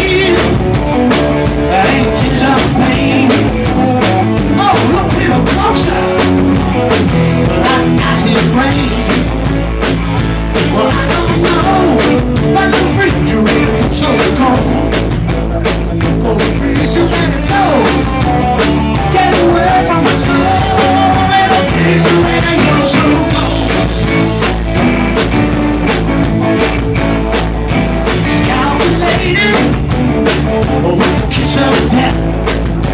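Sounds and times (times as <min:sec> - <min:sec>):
person singing: 0:00.0 - 0:00.8, 0:01.6 - 0:03.7, 0:04.5 - 0:06.4, 0:07.4 - 0:09.4, 0:10.6 - 0:14.9, 0:16.1 - 0:23.9, 0:28.2 - 0:29.9, 0:30.6 - 0:32.4
bass guitar: 0:00.0 - 0:32.9
drums: 0:00.0 - 0:32.9
electric guitar: 0:00.0 - 0:32.9.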